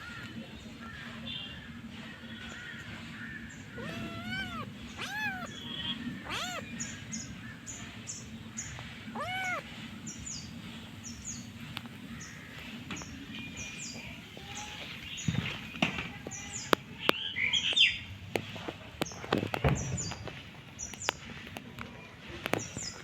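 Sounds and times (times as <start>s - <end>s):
kitten meowing: 3.8s - 7.0s, 9.1s - 9.7s.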